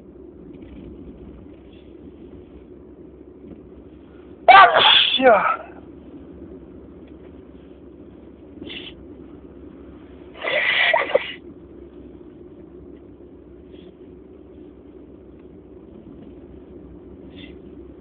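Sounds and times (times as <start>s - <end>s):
steady low hum: 0.0s - 18.0s
person sneezing loudly: 4.5s - 5.8s, 10.4s - 11.4s.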